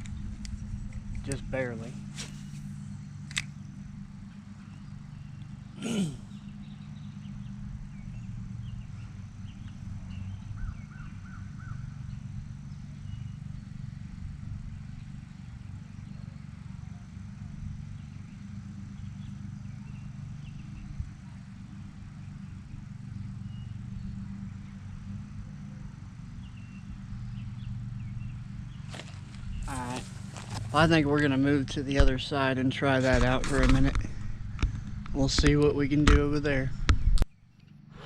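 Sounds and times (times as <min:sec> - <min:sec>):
steady low hum: 0:00.0 - 0:38.0
faint bird chirps: 0:14.8 - 0:24.9.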